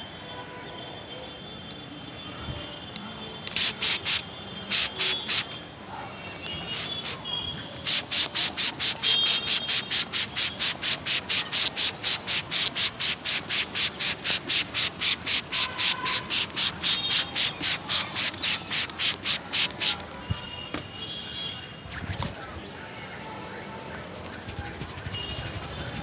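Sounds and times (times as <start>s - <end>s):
hands rubbing hair: 3.5s - 5.5s, 7.8s - 20.1s, 23.8s - 26.0s.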